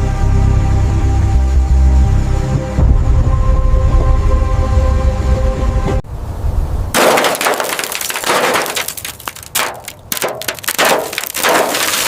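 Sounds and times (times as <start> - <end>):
low rumble: 0.3 - 6.0
glass and metal crunching: 7.0 - 12.0.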